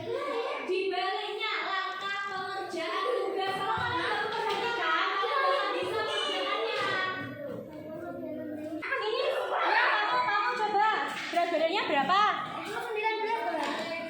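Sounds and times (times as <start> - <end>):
children singing together: 1.6 - 10.3.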